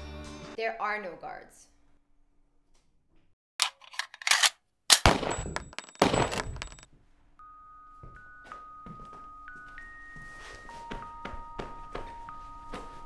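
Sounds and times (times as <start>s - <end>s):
metallic gun handling clicks: 3.6s - 5.1s
loud gunshots: 4.9s - 6.5s
chime-like music notes: 7.4s - 13.0s.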